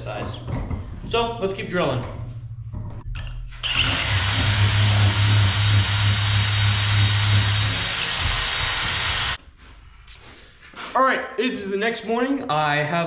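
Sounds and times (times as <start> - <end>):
power drill boring into wood: 3.6 - 9.4.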